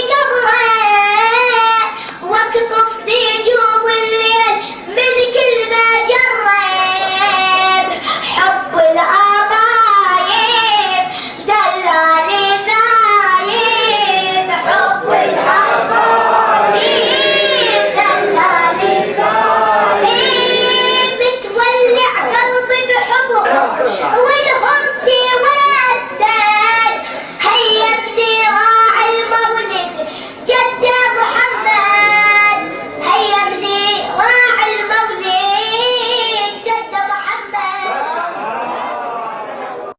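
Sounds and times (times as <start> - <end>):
breath: 1.9 - 2.2, 4.6 - 4.9, 7.9 - 8.4, 11.1 - 11.5, 27.0 - 27.4, 30.0 - 30.4
high voice chanting: 12.3 - 21.9.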